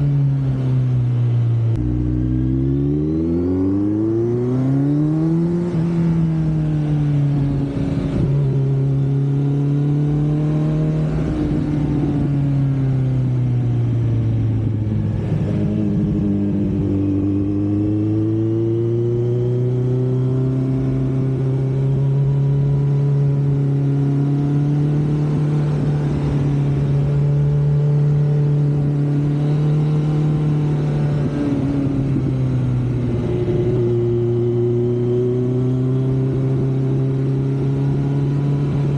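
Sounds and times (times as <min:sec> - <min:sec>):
motorcycle engine and exhaust: 0:00.0 - 0:38.9
wind noise on microphone: 0:03.2 - 0:19.4, 0:24.8 - 0:38.9.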